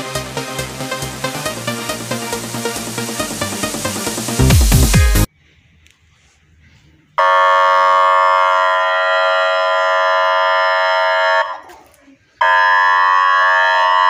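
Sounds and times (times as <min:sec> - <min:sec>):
warning alarm horn tone: 0:07.2 - 0:11.7, 0:12.4 - 0:14.0.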